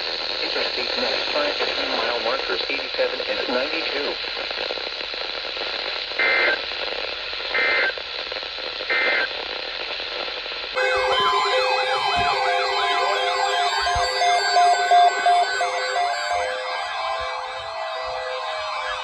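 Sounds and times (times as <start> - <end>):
radio hiss: 0.0 - 19.0
warbling data bursts: 10.8 - 19.0
warbling electronic alert tone: 10.8 - 19.0.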